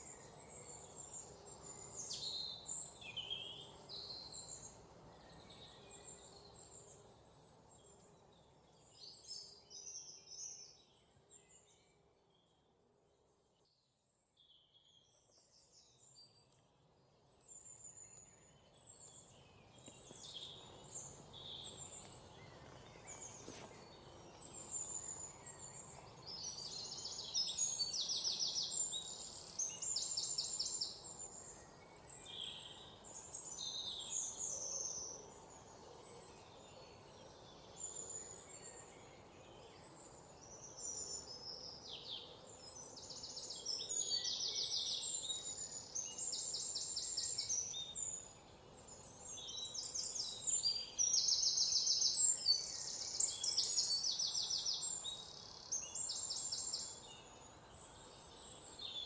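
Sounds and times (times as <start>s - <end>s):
faint steady background hiss: 0.0s - 59.0s
songbirds chirping and trilling: 0.0s - 59.0s.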